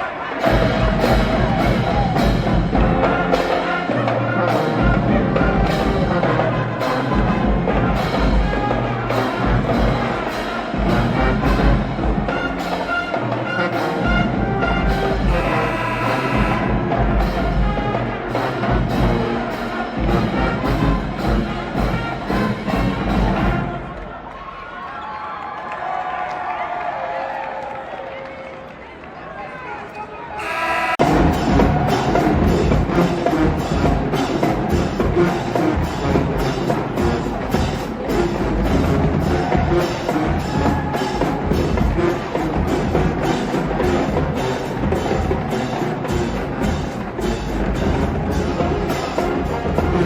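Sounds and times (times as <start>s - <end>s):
loud music with heavy drum beat: 0.4s - 23.7s, 30.4s - 50.0s.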